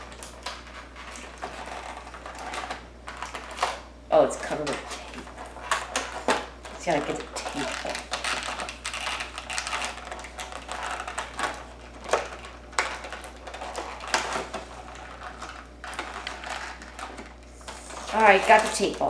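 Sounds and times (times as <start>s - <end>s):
tape peeling off packaging: 7.4s - 17.0s.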